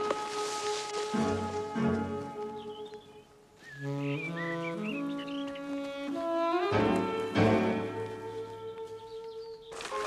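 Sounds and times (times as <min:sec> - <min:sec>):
orchestral music: 0:00.0 - 0:03.0, 0:05.8 - 0:09.2
birds chirping: 0:01.4 - 0:10.0.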